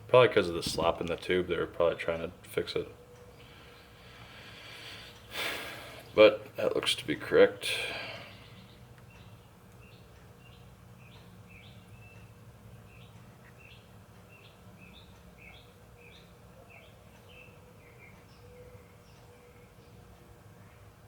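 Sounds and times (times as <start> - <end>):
low steady hum: 0.0 - 21.0
bird chirping: 7.8 - 20.9.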